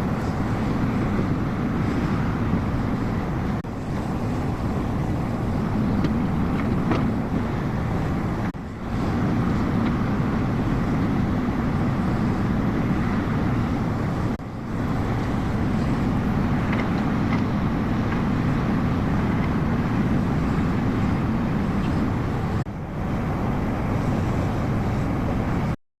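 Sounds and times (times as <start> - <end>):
excavator diesel engine running: 0.0 - 25.8
faint clicks and clanks: 16.6 - 18.3.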